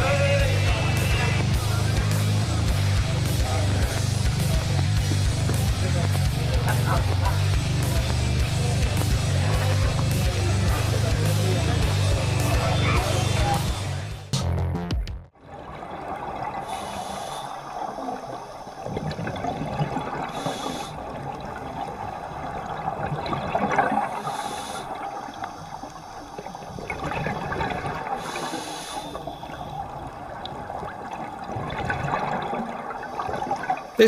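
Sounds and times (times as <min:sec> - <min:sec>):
bubbling gurgling water: 0:00.0 - 0:13.9, 0:15.4 - 0:34.0
regulator inhalation hiss: 0:16.6 - 0:18.9, 0:20.3 - 0:21.0, 0:24.1 - 0:26.8, 0:28.2 - 0:29.8.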